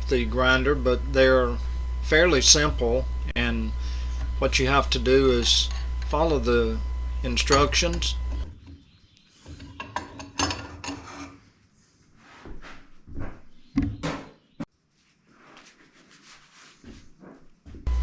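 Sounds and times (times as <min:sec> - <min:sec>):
knocks and clatter of handling: 0:09.5 - 0:11.0.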